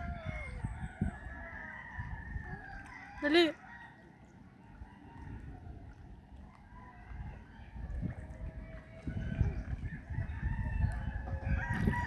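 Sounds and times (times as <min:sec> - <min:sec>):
rooster crowing: 0:00.0 - 0:04.1, 0:10.0 - 0:12.0.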